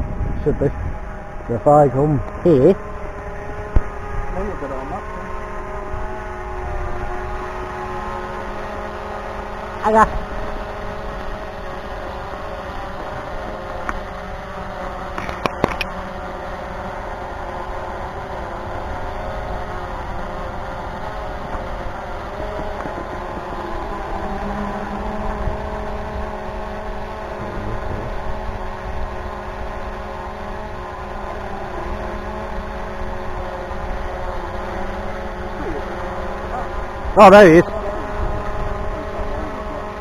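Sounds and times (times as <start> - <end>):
wind rumbling on microphone: 0.0 - 7.3, 19.0 - 29.2
mechanical whine: 0.0 - 40.0.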